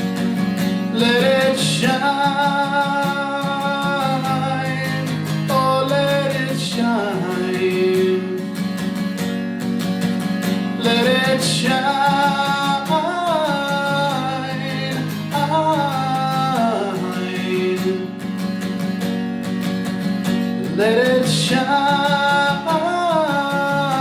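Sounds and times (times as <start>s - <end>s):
guitar strumming: 0.0s - 24.0s
man singing: 0.8s - 8.8s, 10.6s - 18.3s, 20.6s - 24.0s.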